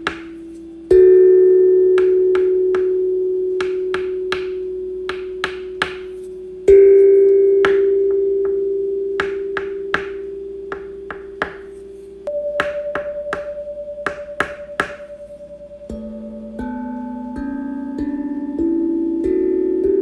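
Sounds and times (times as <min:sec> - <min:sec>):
bell-like ringing tone: 0:06.7 - 0:18.8.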